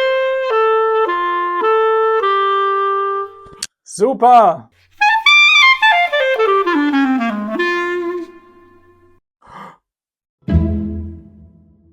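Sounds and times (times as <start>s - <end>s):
clarinet playing: 0.0s - 3.4s, 5.0s - 9.2s
music: 0.0s - 3.6s, 5.0s - 9.2s, 10.4s - 11.9s
short breath: 9.4s - 9.9s.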